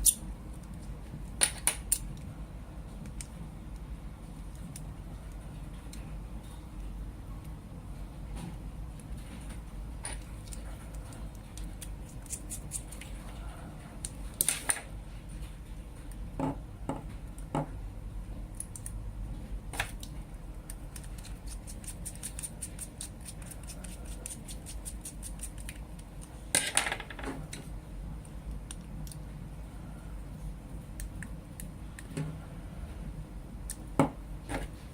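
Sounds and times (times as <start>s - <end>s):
low steady hum: 0.0s - 34.9s.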